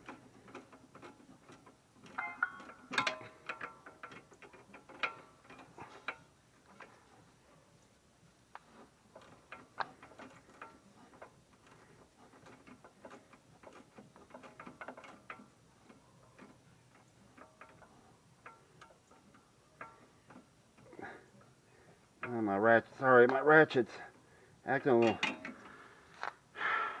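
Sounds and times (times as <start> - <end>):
hand ratchet clicking: 0.0 - 7.0, 8.5 - 21.1.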